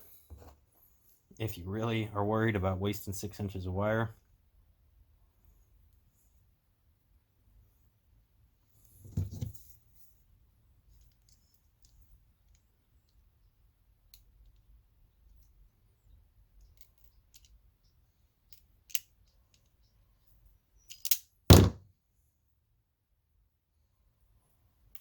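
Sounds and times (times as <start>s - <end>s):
tool thunk: 21.5s - 21.8s.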